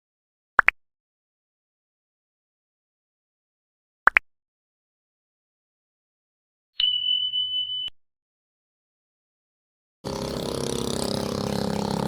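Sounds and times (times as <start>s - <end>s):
high-pitched beep: 6.8s - 7.9s
engine running steadily: 10.1s - 12.0s
open-air noise: 10.1s - 12.0s.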